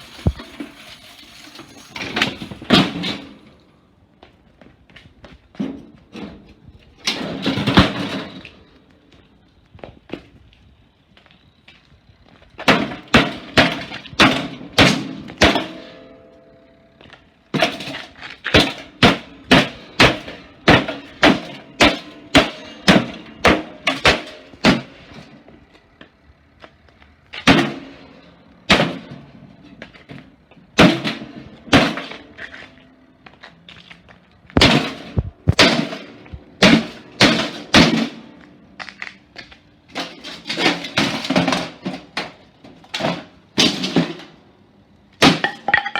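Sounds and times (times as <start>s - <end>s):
metal ringing: 45.4s - 45.9s.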